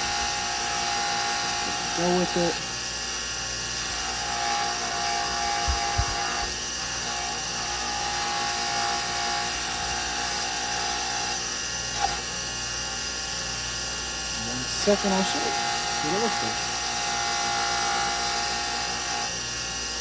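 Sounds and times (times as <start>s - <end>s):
buffing wheel whining: 5.4s - 6.6s.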